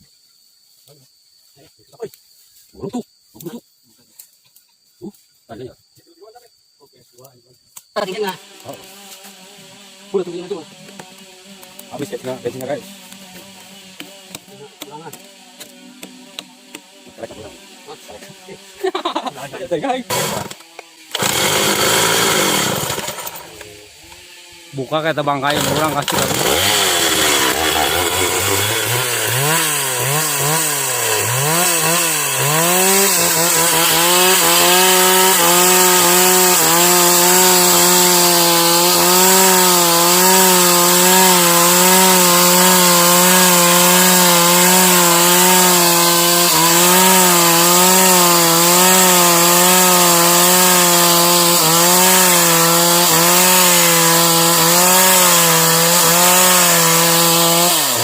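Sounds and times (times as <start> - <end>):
chainsaw cutting wood: 8.0 - 58.0
chainsaw revving: 8.2 - 58.0.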